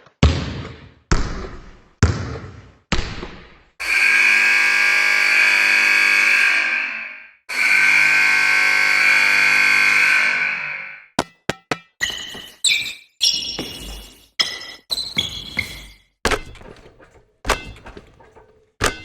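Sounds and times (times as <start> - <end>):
basketball thuds and bangs: 11.2 - 12.6, 15.1 - 19.0.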